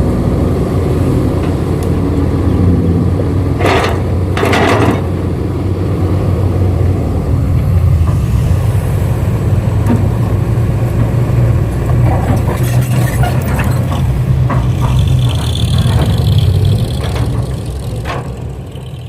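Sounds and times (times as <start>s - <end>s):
engine humming: 0.0s - 19.0s
knocks and clatter: 3.6s - 5.2s, 9.8s - 19.0s.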